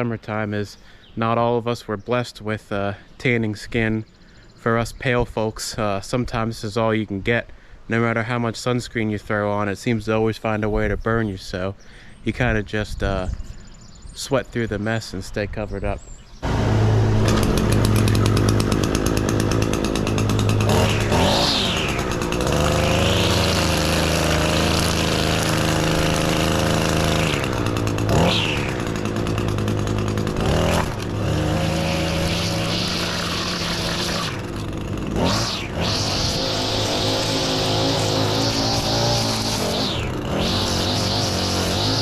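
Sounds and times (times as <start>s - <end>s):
string trimmer cutting: 16.4s - 42.0s.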